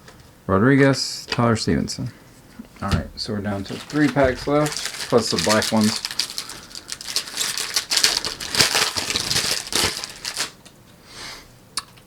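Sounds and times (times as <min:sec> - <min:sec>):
foil wrapper crinkling and tearing: 0:03.5 - 0:10.7.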